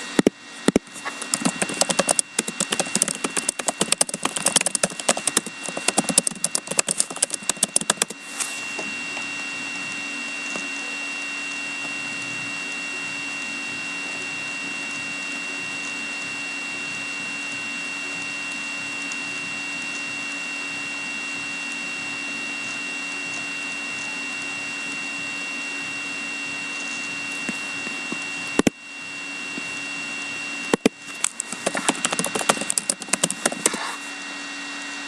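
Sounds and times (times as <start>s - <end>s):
electrical hum with high whine: 0.0s - 35.0s
dense irregular crackling and clicking: 1.2s - 8.2s.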